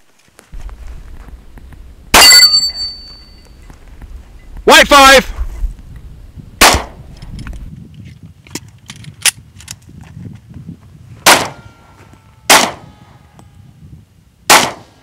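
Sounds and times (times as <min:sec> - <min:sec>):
steel target plates ringing: 0:02.2 - 0:03.5
pistol shots: 0:06.6 - 0:07.0, 0:11.2 - 0:11.6, 0:12.5 - 0:12.9, 0:14.5 - 0:15.0.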